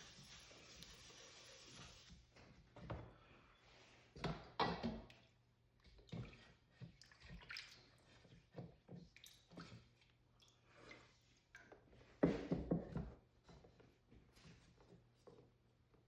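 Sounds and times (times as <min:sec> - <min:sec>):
water splashing and dripping: 0:07.0 - 0:08.0.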